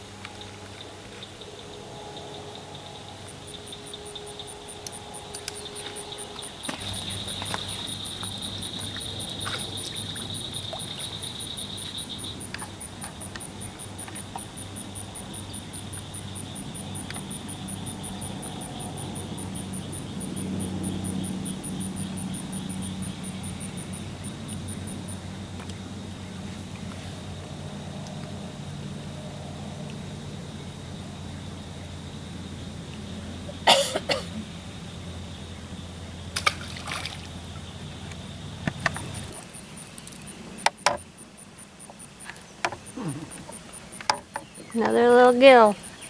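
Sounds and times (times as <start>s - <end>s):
insects chirping: 0.0s - 46.0s
low steady hum: 0.0s - 46.0s
high insect buzz: 0.1s - 25.3s.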